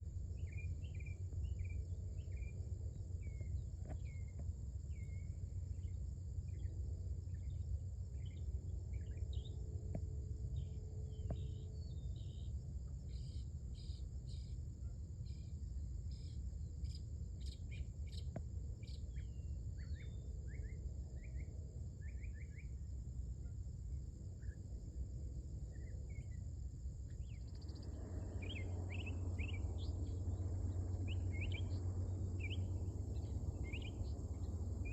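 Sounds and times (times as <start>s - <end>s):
high insect drone: 0.0s - 34.9s
mockingbird chirps and trills: 27.2s - 34.9s.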